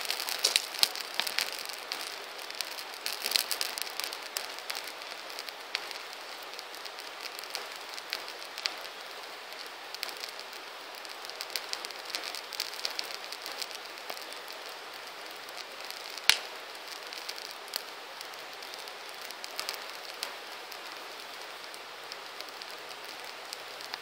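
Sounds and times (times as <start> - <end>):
campfire hissing and crackling: 0.0 - 24.0
loud sharp pop: 16.3 - 16.5.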